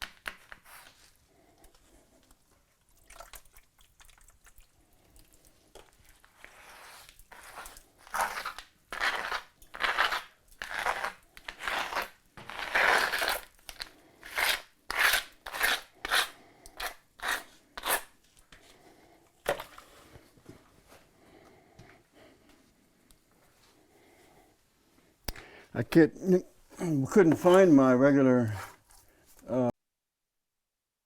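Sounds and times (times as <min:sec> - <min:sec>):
trowel scraping wet gritty mortar: 0:06.1 - 0:18.2, 0:28.4 - 0:29.1.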